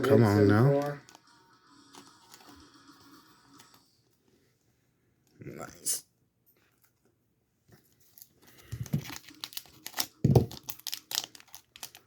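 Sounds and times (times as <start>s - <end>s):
foil pack crinkling and tearing: 8.1s - 12.0s.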